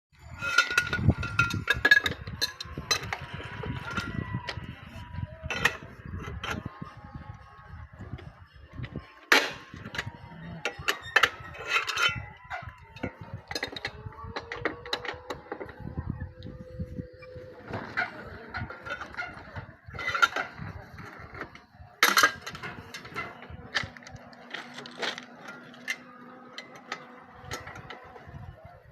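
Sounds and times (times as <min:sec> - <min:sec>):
metal tools clanking on steel rail: 0:00.2 - 0:04.1, 0:09.3 - 0:15.6.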